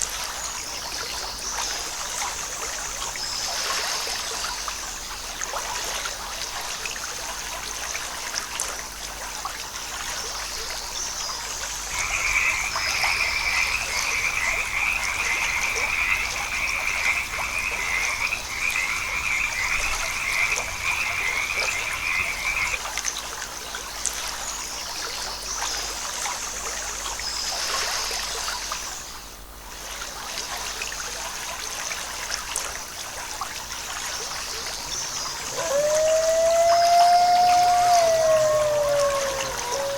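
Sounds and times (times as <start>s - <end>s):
flowing water: 0.0s - 39.9s
frogs trilling: 11.9s - 22.8s, 34.9s - 39.9s.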